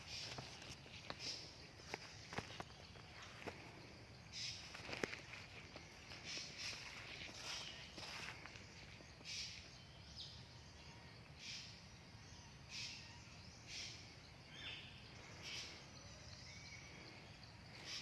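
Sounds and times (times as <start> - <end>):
crunching steps on dry ground: 0.0 - 9.0
bird chirps: 0.0 - 18.0.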